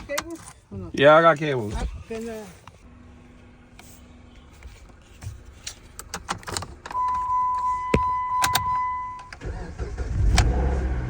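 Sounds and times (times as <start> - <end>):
car engine cranking and starting: 0.0 - 11.0
steady electronic beep: 7.0 - 9.3.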